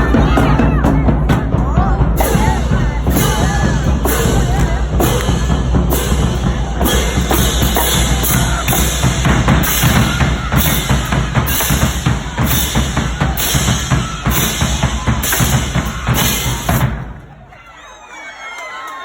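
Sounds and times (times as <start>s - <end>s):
drum-driven music: 0.0s - 17.5s.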